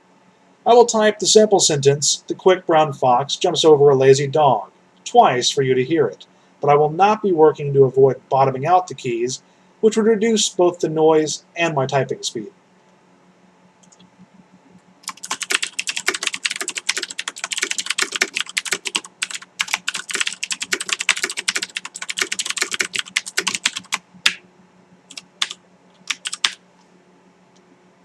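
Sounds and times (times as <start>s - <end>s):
clicky mechanical keyboard typing: 15.0s - 24.4s, 25.1s - 26.6s.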